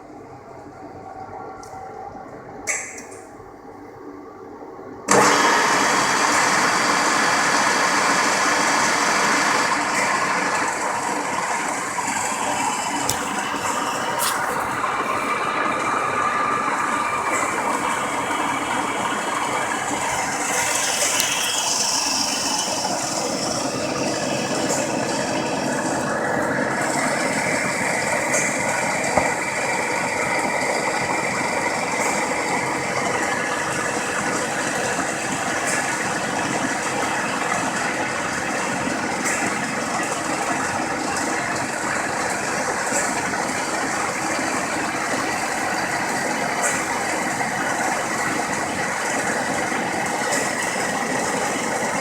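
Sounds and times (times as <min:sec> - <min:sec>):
machine running: 0:05.1 - 0:38.1.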